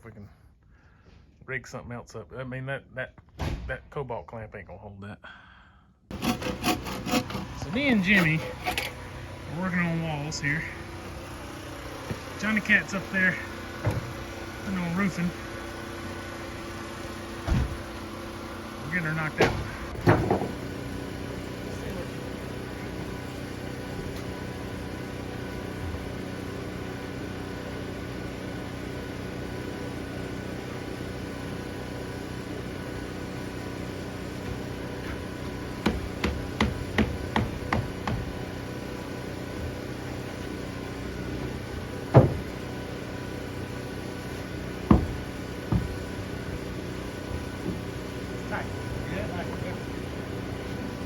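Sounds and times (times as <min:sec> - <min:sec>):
steady machine hum: 0:06.0 - 0:51.0
hammer nailing roof: 0:06.1 - 0:08.9, 0:35.8 - 0:38.5, 0:42.0 - 0:42.6, 0:44.8 - 0:46.3.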